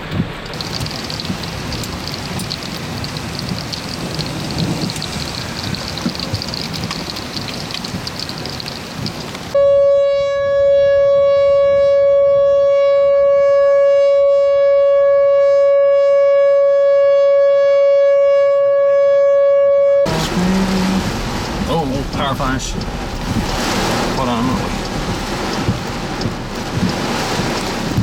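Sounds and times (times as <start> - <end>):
rain: 0.0 - 9.6, 20.1 - 28.0
vehicle moving: 0.0 - 9.6, 20.1 - 28.0
loud electronic tone: 9.6 - 20.7.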